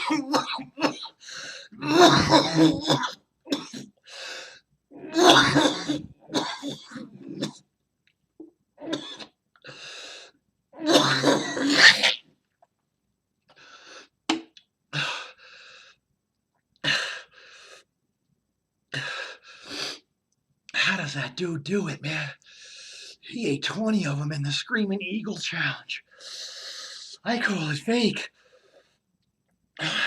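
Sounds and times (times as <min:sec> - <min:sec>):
man coughing and wheezing: 0:00.0 - 0:04.0, 0:05.0 - 0:07.6, 0:10.8 - 0:12.2.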